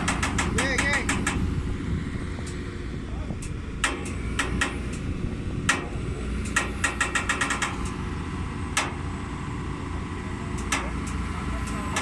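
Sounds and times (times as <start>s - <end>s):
sharp metallic clanks: 0.0s - 1.5s, 3.4s - 5.0s, 5.6s - 8.0s
diesel engine running: 0.0s - 12.0s.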